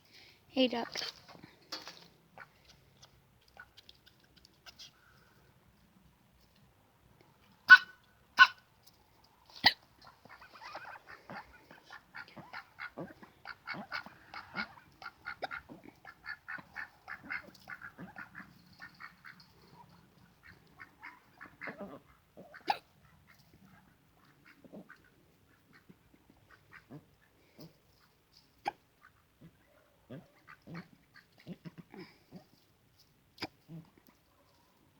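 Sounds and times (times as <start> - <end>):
ducks calling sharply: 7.7 - 8.6, 9.5 - 21.8.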